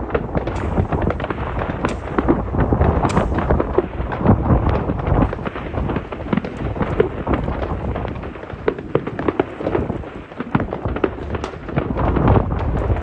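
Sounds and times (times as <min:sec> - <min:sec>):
distant fireworks bangs and crackles: 0:00.0 - 0:13.0.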